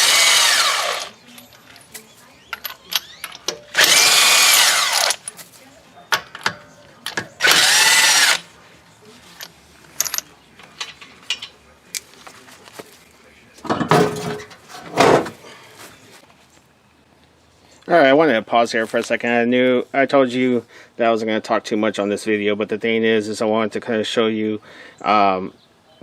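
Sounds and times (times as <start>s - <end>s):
handheld power tool motor: 0.0s - 1.1s, 3.8s - 5.2s, 7.4s - 8.4s
tools clicking and clanking: 0.0s - 8.4s, 9.3s - 12.1s, 13.6s - 15.4s.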